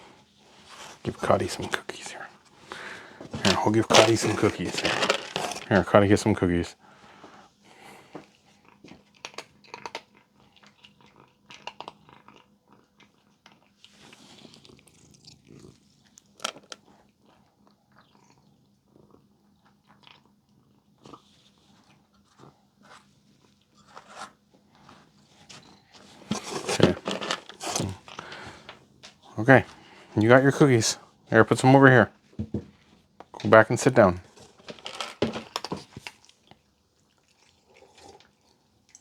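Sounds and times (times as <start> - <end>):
dog chewing treats: 0.7 - 6.1, 8.5 - 18.3, 25.6 - 28.8, 33.3 - 39.0.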